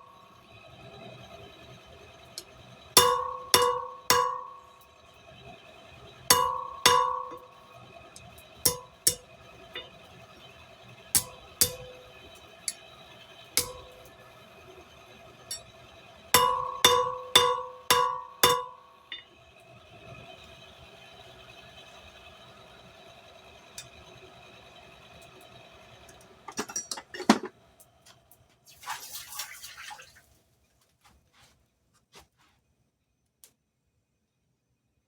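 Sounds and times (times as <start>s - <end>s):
hammer striking steel on anvil: 3.0s - 4.8s, 6.3s - 7.6s, 8.2s - 10.0s, 11.2s - 12.8s, 13.6s - 14.2s, 15.5s - 15.7s, 16.4s - 19.3s.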